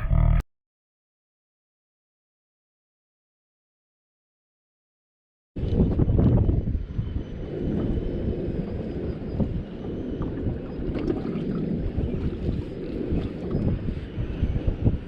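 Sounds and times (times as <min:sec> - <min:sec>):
wind buffeting microphone: 0:05.6 - 0:15.0.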